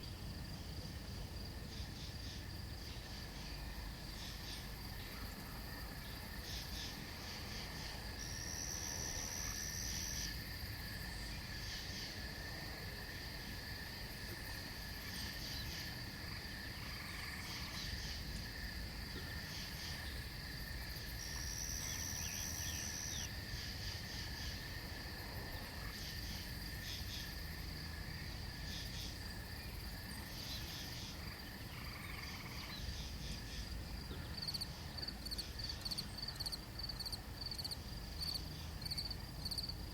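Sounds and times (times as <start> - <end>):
crickets trilling: 0.0 - 39.9
insect pulsed chirps: 1.7 - 12.2, 19.4 - 39.7
insect buzzing call: 1.7 - 39.8.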